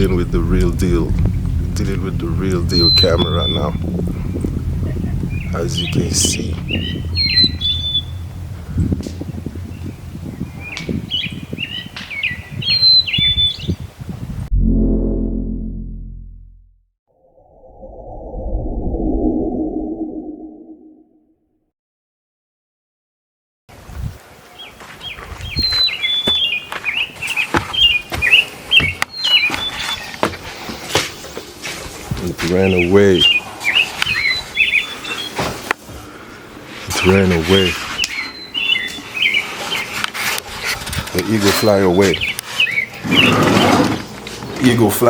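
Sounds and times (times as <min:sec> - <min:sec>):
osprey calling: 0:02.5 - 0:12.3
osprey whistled chirps: 0:02.7 - 0:03.8, 0:05.3 - 0:08.9.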